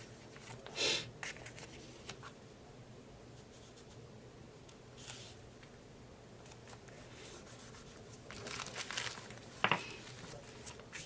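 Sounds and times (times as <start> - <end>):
paper rustling: 0.0 - 2.3, 6.4 - 11.0.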